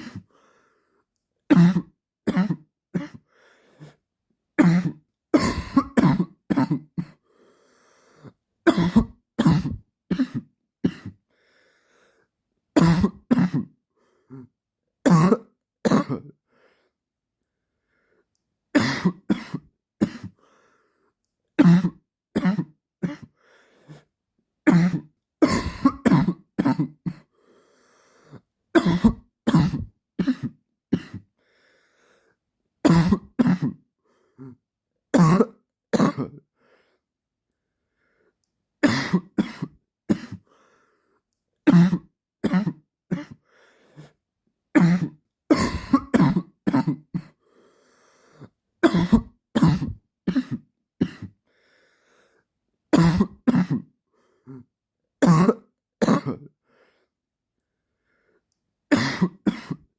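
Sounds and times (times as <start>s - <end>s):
man coughing dryly: 1.5s - 3.2s, 4.6s - 7.2s, 8.7s - 11.2s, 12.8s - 13.8s, 15.1s - 16.3s, 18.8s - 20.4s, 21.6s - 23.3s, 24.7s - 27.3s, 28.8s - 31.3s, 32.9s - 33.8s, 35.2s - 36.4s, 38.8s - 40.4s, 41.7s - 43.4s, 44.8s - 47.4s, 48.8s - 51.4s, 53.0s - 53.9s, 55.2s - 56.5s, 58.9s - 59.9s.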